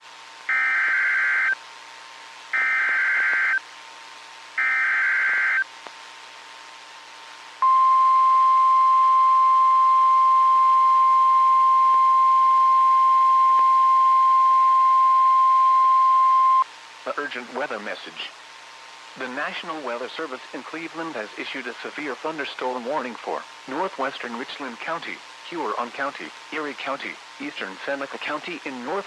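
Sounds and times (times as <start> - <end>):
faint radio hiss: 0.0 - 29.0
digital data bursts screeching: 0.5 - 1.6, 4.6 - 5.6
steady warning alarm tone: 0.5 - 1.6, 2.6 - 3.6, 4.6 - 5.6.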